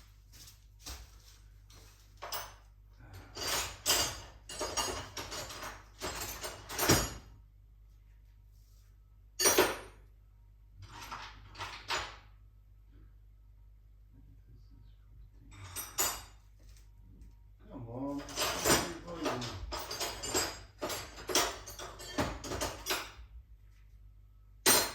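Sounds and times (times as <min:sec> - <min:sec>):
metal tools clinking and scraping: 0:01.7 - 0:07.3, 0:15.5 - 0:16.4, 0:18.1 - 0:23.2.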